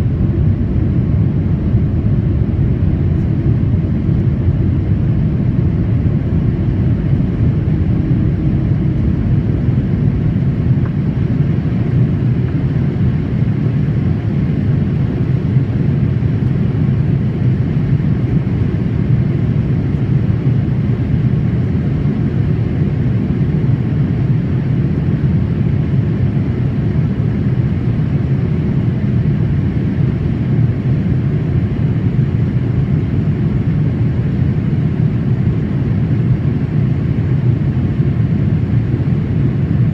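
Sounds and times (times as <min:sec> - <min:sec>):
airliner cabin rumble: 0:00.0 - 0:39.9.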